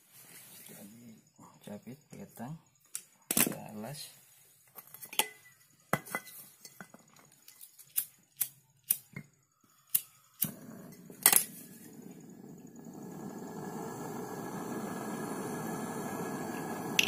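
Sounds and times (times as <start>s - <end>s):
steady hiss: 0.0s - 2.5s, 9.9s - 17.0s.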